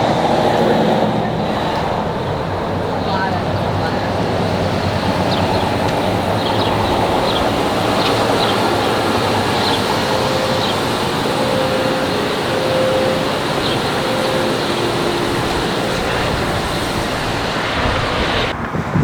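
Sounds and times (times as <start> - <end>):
city traffic rumble: 0.0 - 19.0
faint held tone: 6.4 - 17.7.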